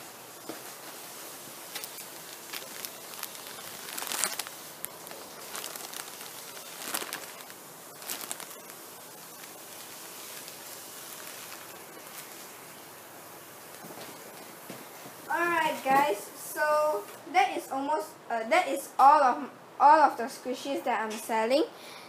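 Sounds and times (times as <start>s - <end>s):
soft steady hiss: 0.0s - 22.0s
plastic wrappers crinkling: 0.4s - 12.6s.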